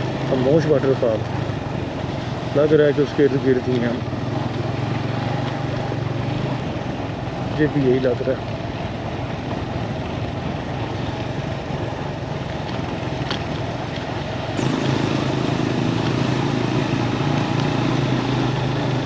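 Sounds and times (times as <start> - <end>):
motorcycle engine running: 0.0 - 19.0
rushing noise: 14.5 - 19.0.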